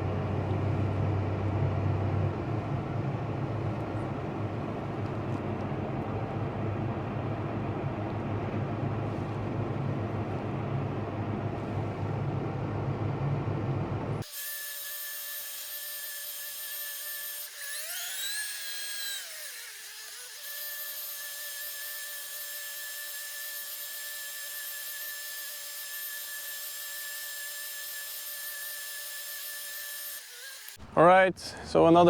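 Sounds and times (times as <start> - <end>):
low engine rumble: 0.0 - 14.2.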